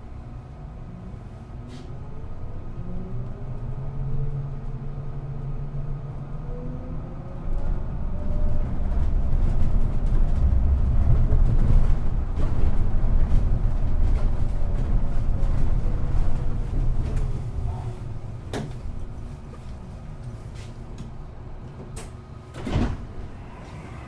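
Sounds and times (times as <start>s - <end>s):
bus engine rumble and whine: 0.0s - 24.0s
bus door burst: 21.9s - 23.4s.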